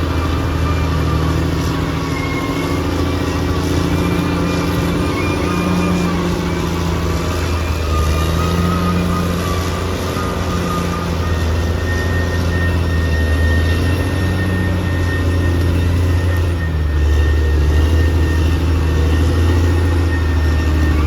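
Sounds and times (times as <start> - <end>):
bulldozer diesel engine running: 0.0 - 21.0
thin high whine: 0.0 - 21.0.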